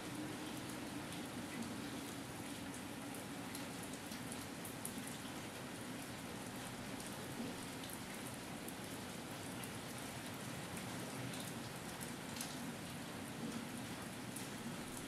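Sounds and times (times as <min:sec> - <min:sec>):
light drizzle falling: 0:00.0 - 0:15.0.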